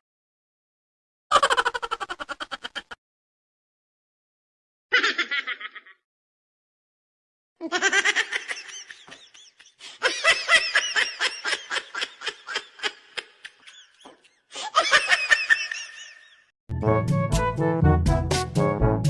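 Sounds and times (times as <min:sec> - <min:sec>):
laughter: 0:01.3 - 0:03.0, 0:04.9 - 0:06.0, 0:07.6 - 0:16.5.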